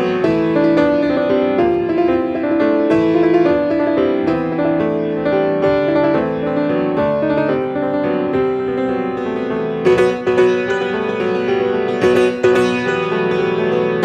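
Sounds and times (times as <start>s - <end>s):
loud accented piano chords: 0.0s - 14.0s
solo piano playing: 0.0s - 14.0s.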